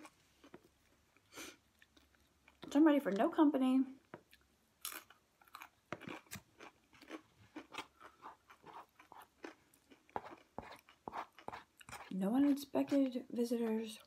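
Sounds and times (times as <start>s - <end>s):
chewing crunchy food: 1.6s - 3.3s, 4.2s - 13.2s.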